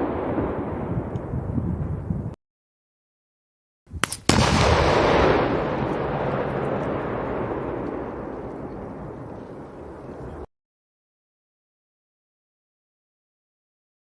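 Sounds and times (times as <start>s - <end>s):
explosion blast with rumble: 0.0s - 2.4s, 4.3s - 10.5s
sharp cracks: 4.0s - 8.7s.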